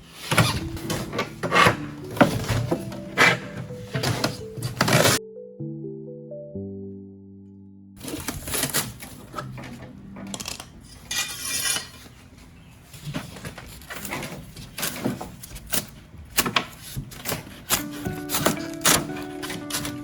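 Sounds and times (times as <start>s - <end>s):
metal scrape: 10.8s - 12.3s.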